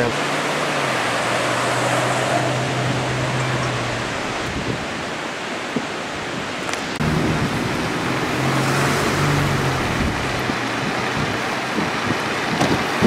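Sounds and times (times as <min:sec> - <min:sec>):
strong storm wind rushing: 0:01.0 - 0:13.0
low vehicle engine hum: 0:07.0 - 0:12.6.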